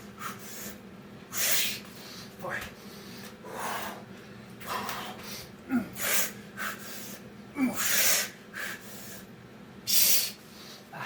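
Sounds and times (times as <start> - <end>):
man grunting: 5.7 - 6.0, 7.5 - 8.1
man exhaling forcefully: 7.6 - 8.8.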